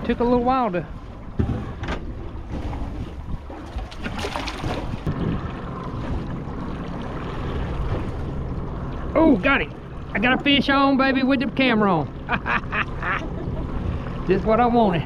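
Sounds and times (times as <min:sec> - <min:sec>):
wind buffeting microphone: 0:00.0 - 0:08.9
water noise: 0:00.0 - 0:15.0.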